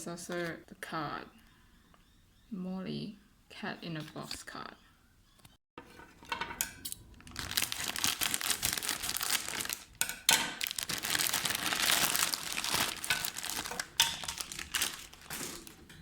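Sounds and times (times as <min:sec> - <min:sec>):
packaging crinkling: 0:07.1 - 0:16.0.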